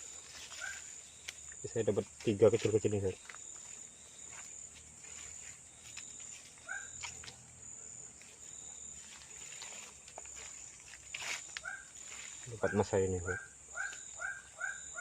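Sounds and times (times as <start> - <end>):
insects trilling: 0.0 - 15.0.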